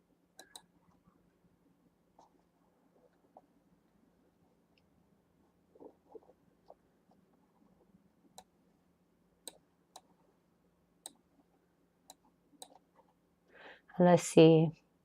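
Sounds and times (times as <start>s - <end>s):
computer mouse clicks: 0.4s - 0.7s, 9.4s - 10.1s.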